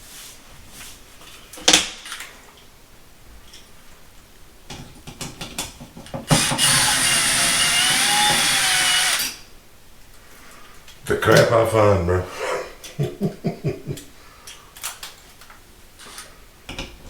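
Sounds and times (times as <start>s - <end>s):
power drill running: 6.3s - 9.4s.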